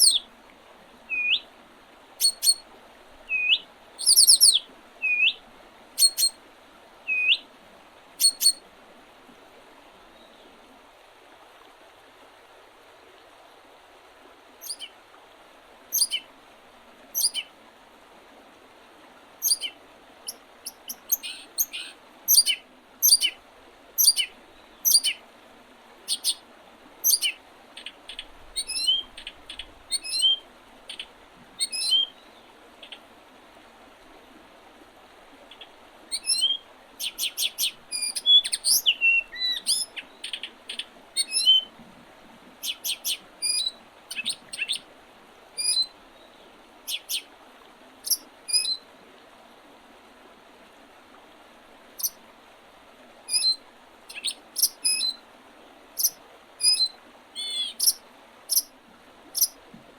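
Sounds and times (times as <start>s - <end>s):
songbirds chirping: 0.0s - 0.3s, 1.0s - 1.5s, 3.2s - 5.4s, 15.9s - 16.3s, 19.4s - 23.4s, 53.3s - 55.2s, 56.0s - 58.7s
faint steady hiss: 0.0s - 59.9s.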